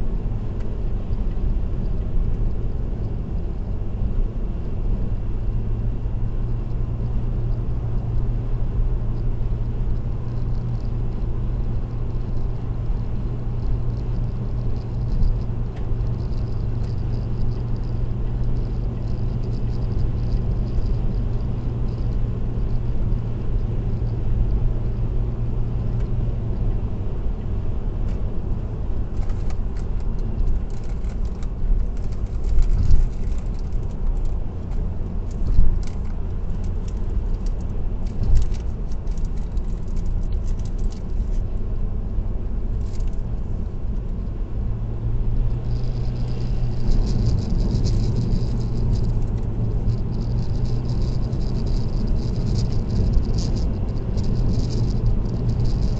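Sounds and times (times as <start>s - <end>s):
car tyres and engine drone: 0.0s - 55.9s.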